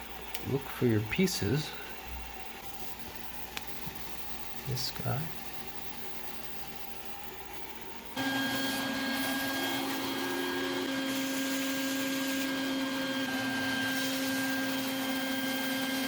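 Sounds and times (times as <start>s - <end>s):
vacuum cleaner humming: 8.2s - 16.0s.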